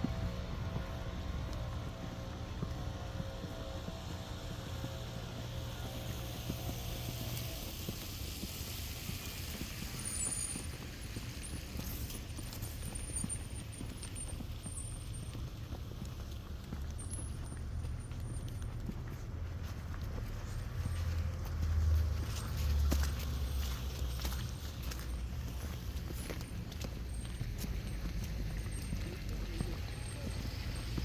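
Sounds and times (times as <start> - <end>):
steady low rumble: 0.0 - 31.0
vehicle engine hum: 0.0 - 31.0
tyre hiss on wet road: 4.4 - 12.8.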